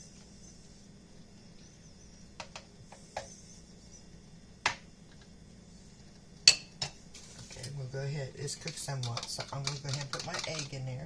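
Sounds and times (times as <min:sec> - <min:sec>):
utensil clicking against pan: 0:08.6 - 0:10.8.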